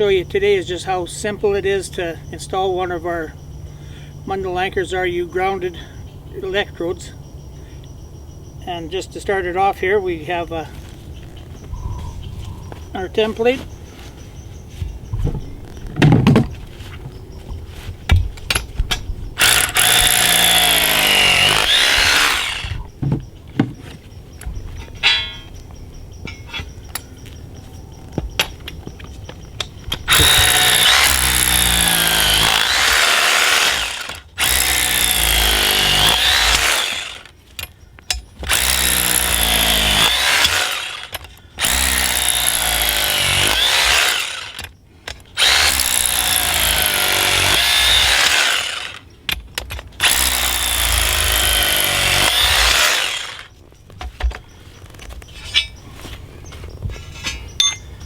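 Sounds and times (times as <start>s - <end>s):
power drill boring into ground: 19.4s - 22.8s, 30.1s - 37.4s, 38.4s - 44.7s, 45.4s - 49.0s, 50.0s - 53.5s.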